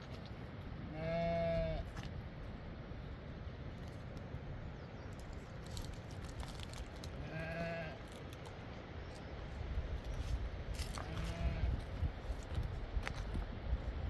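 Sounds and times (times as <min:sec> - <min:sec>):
sheep or goat bleat: 0:00.9 - 0:01.9, 0:07.2 - 0:08.0, 0:11.0 - 0:11.8.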